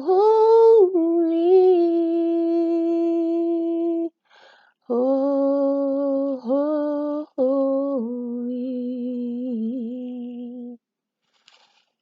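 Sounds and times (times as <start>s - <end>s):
person singing unaccompanied: 0.0s - 4.2s, 4.8s - 10.8s.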